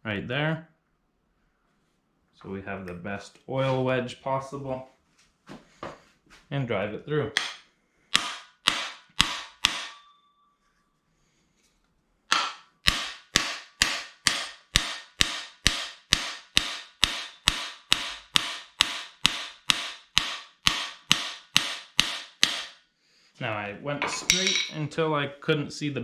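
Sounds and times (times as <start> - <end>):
hammer striking metal driver: 7.4 - 10.2, 12.3 - 22.8, 24.0 - 24.8.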